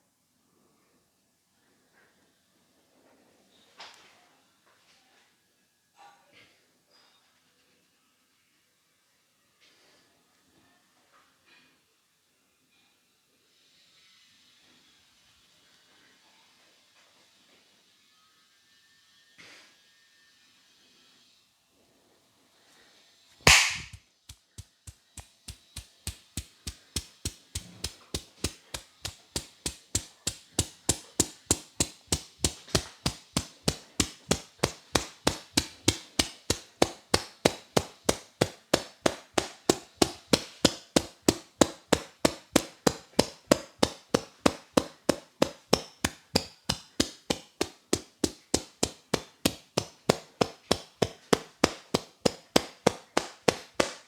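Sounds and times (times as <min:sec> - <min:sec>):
hands slapping head in massage: 0:23.5 - 0:54.0.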